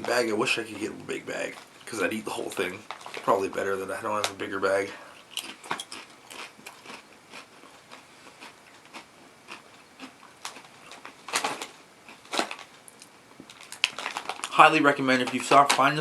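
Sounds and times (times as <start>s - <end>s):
person crunching potato chips: 5.2s - 15.8s.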